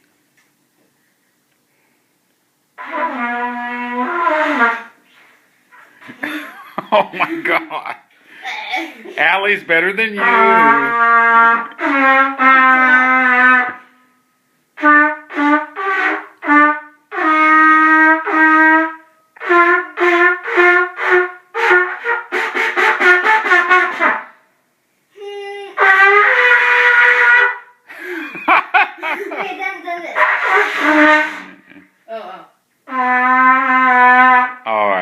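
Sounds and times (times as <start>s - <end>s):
brass horn notes: 2.8s - 5.0s, 9.4s - 14.1s, 14.8s - 24.3s, 25.8s - 27.7s, 30.2s - 31.8s, 32.9s - 34.7s.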